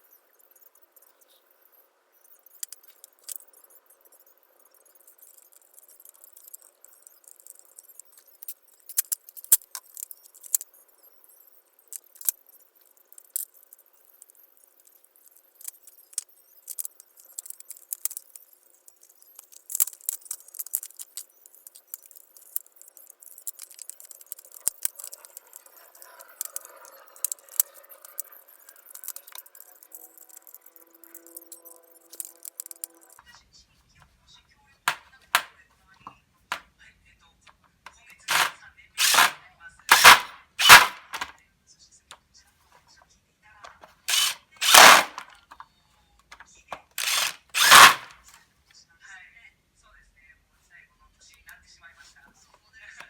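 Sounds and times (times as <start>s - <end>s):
small hard parts clicking: 2.2s - 33.3s, 38.0s - 41.3s, 43.7s - 45.6s, 46.2s - 48.4s.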